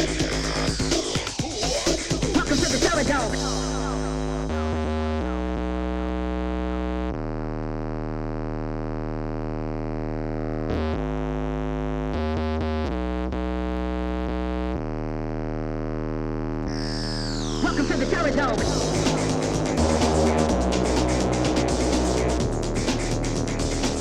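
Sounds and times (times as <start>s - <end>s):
big beat electronic music: 0.0s - 7.1s, 16.7s - 24.0s.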